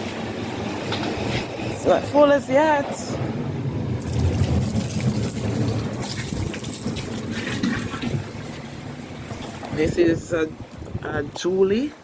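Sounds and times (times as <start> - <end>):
water from hose pouring into drum: 4.0 - 9.6.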